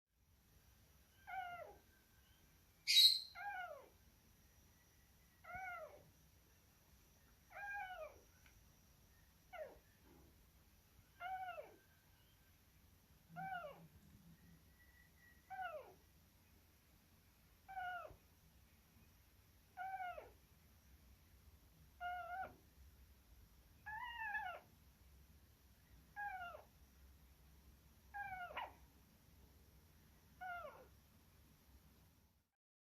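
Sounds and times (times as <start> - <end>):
hamster snoring squeaks: 22.0 - 22.6, 23.9 - 24.6.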